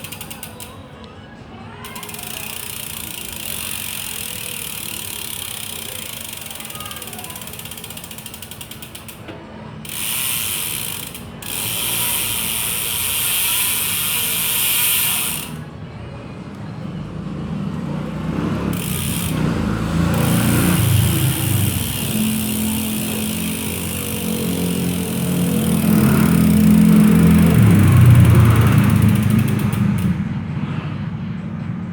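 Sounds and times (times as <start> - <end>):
bicycle hub ratchet clicking: 0.0 - 0.9, 1.8 - 15.7, 18.5 - 30.2.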